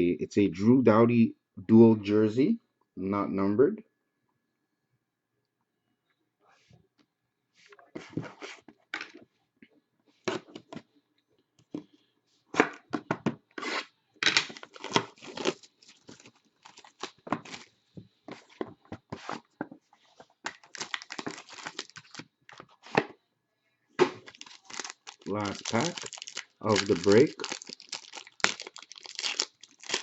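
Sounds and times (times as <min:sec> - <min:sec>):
foil wrapper tearing and crinkling: 0:14.4 - 0:17.7, 0:20.5 - 0:22.6, 0:24.2 - 0:30.0.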